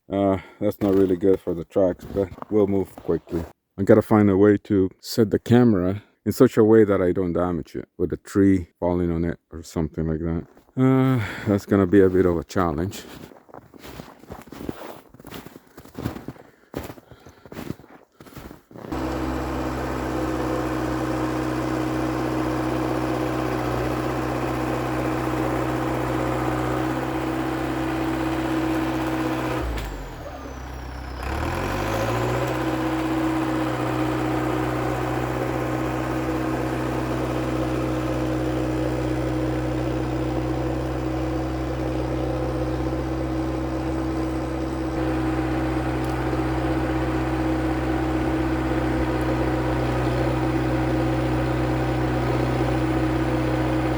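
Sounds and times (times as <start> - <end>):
bulldozer diesel engine running: 15.3 - 53.9.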